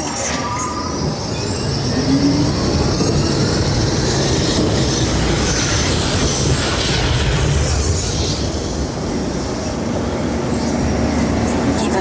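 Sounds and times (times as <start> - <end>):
ride vehicle rumbling and rattling: 1.0 - 12.0.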